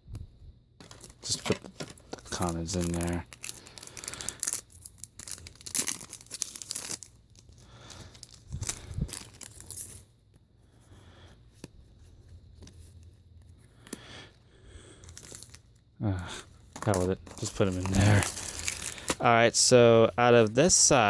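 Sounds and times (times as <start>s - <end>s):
foil tearing crackles: 0.8s - 10.0s, 15.1s - 15.6s, 16.8s - 19.3s
foil wrappers crinkling: 0.8s - 10.0s, 14.8s - 20.8s.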